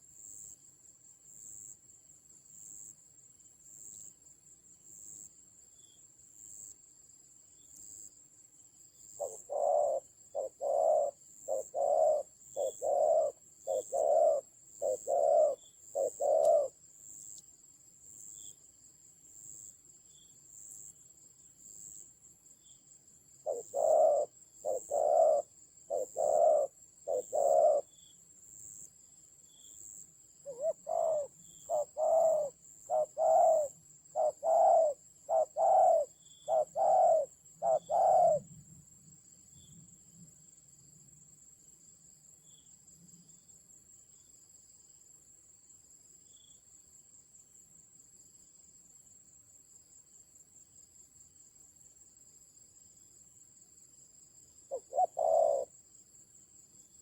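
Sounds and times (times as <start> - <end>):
high insect trill: 0.0 - 57.0
doves cooing: 9.2 - 16.7, 23.5 - 27.8, 30.5 - 38.5, 54.7 - 55.7.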